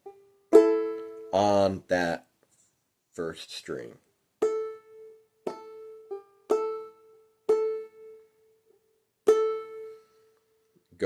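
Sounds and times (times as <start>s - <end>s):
banjolele string plucked: 0.0s - 1.4s, 4.4s - 8.3s, 9.2s - 10.0s.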